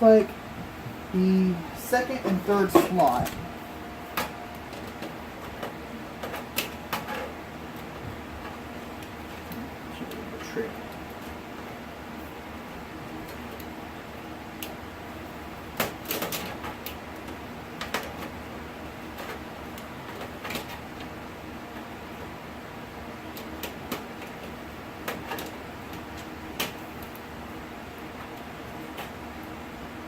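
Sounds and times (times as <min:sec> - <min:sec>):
low background hiss: 0:00.0 - 0:06.1.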